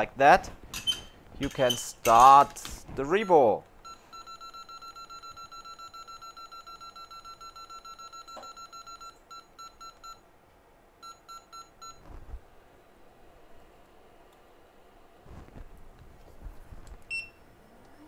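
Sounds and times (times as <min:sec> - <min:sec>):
high electronic beeps: 0:03.2 - 0:10.2.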